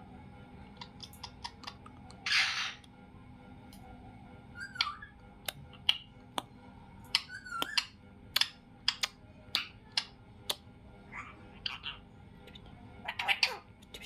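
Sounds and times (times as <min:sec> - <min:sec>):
parrot clicking and chirping: 0:00.8 - 0:02.9, 0:04.6 - 0:10.7.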